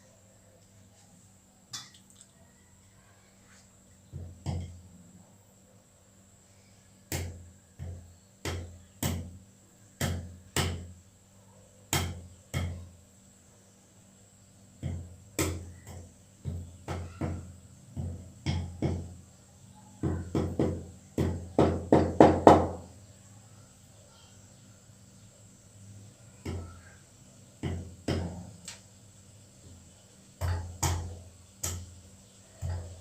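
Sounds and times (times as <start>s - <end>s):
spices pounded with thuds: 4.1s - 4.8s, 7.1s - 9.4s, 10.0s - 11.0s, 11.9s - 12.9s, 14.8s - 19.2s, 20.0s - 22.9s, 27.6s - 28.6s, 30.4s - 33.0s.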